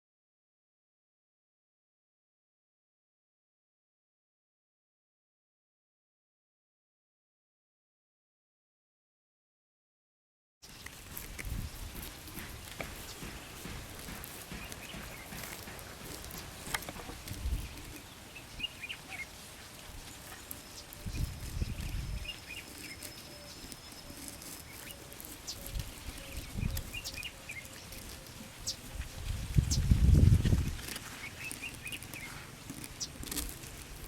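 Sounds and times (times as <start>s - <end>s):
birds chirping: 10.6s - 34.0s
low evenly spaced bird notes: 17.5s - 30.1s.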